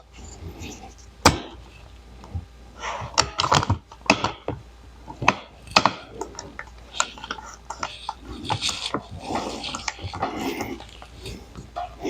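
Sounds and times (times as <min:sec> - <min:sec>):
tools and metal parts clicking: 0:05.1 - 0:11.9.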